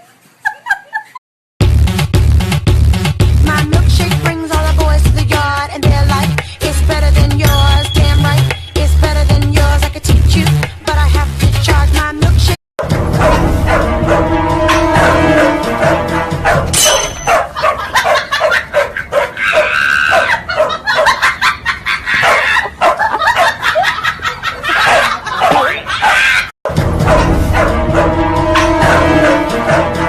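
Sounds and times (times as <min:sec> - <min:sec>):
background music: 0:01.6 - 0:17.4, 0:26.7 - 0:30.0
dog barking and yipping: 0:13.2 - 0:14.2, 0:16.4 - 0:26.5.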